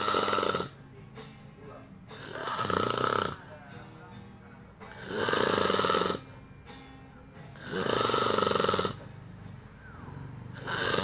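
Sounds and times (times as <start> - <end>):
man snoring: 0.0 - 0.8, 2.2 - 3.5, 4.9 - 6.4, 7.6 - 9.1, 10.2 - 11.0.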